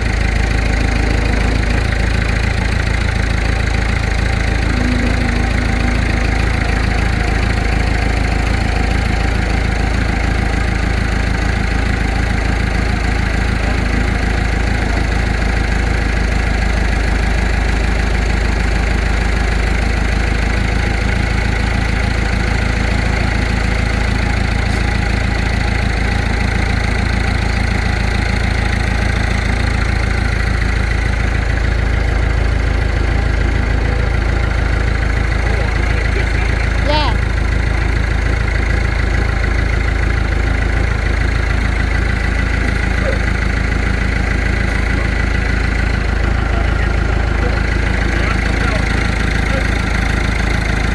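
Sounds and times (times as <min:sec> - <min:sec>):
diesel engine idling: 0:00.0 - 0:50.9.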